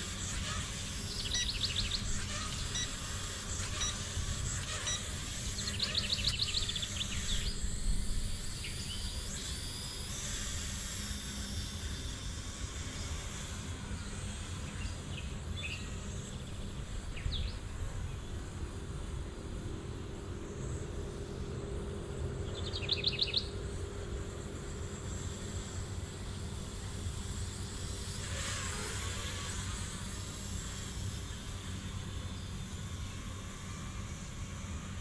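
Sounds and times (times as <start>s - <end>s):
birds chirping: 0.2s - 7.6s, 22.4s - 23.7s.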